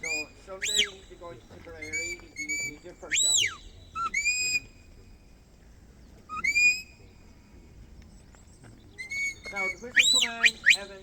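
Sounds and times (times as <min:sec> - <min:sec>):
shepherd's whistle commands: 0:00.0 - 0:01.1, 0:01.8 - 0:04.7, 0:06.3 - 0:07.0, 0:09.0 - 0:11.0.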